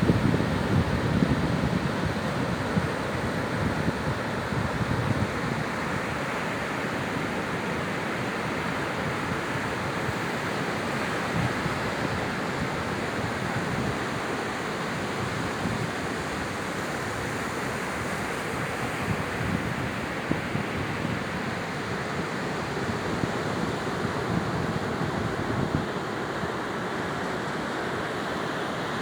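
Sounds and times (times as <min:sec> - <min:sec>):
wind buffeting microphone: 0:00.0 - 0:05.8
sea surf breaking on shore: 0:00.0 - 0:29.0.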